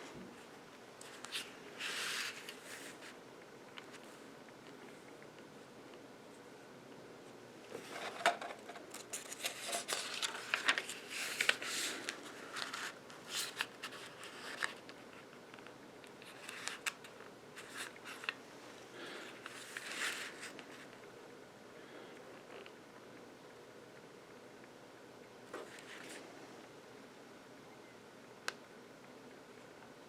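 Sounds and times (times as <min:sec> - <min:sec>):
rustling: 0:07.7 - 0:15.6, 0:19.0 - 0:21.1.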